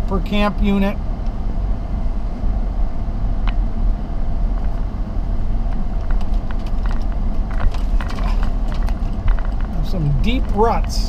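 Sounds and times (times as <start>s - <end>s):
car cabin rumble: 0.0s - 11.0s
knocks and rattles: 6.0s - 11.0s.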